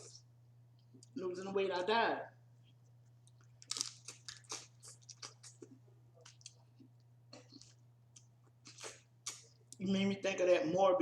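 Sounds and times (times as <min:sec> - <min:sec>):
steady low hum: 0:00.0 - 0:11.0
person chewing with wet clicks: 0:02.6 - 0:09.8.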